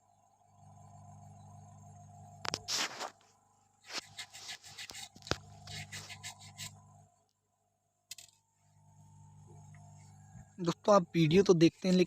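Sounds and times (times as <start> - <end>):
low hum: 0.0 - 2.8, 5.4 - 11.6
scraping on circuit board: 2.5 - 3.2, 3.8 - 6.8.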